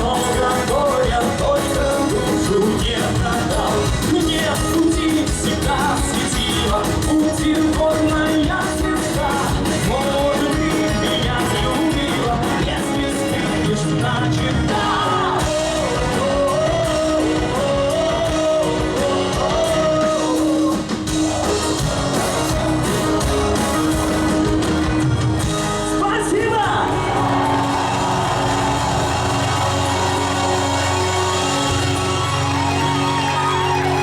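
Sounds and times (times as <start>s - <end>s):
person singing: 0.0s - 24.8s
live rock band playing: 0.0s - 34.0s.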